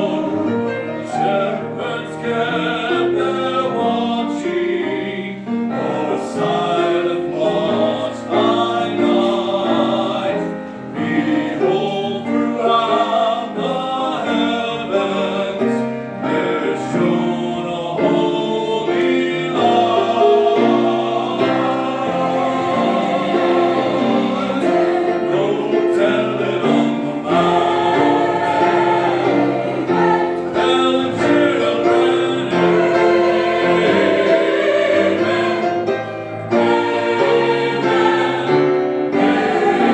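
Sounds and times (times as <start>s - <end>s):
choir singing: 0.0s - 39.9s.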